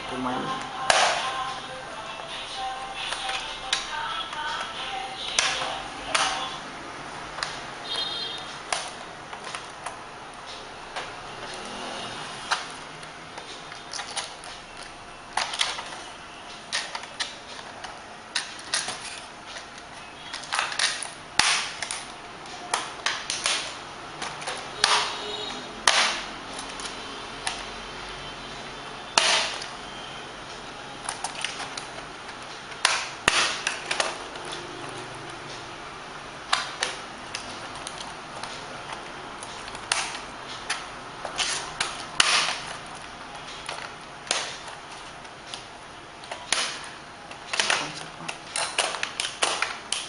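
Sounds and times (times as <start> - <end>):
plastic clips snapping loose: 3.1 - 6.6, 16.7 - 27.6, 31.0 - 34.6, 36.5 - 50.0.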